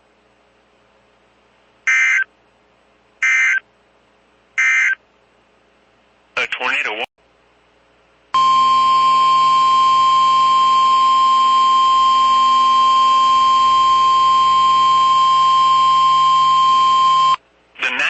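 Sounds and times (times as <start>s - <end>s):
emergency alert tone: 8.4s - 17.4s.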